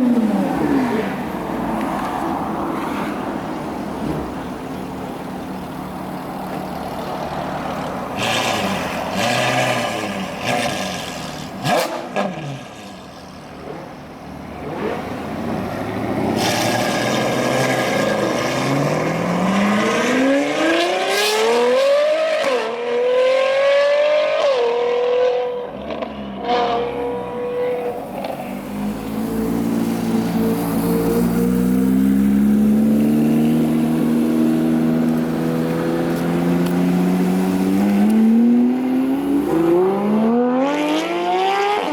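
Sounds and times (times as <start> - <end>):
cars passing by: 0.0 - 41.9
road noise: 0.0 - 41.9
car accelerating hard: 8.1 - 12.8, 14.6 - 41.9.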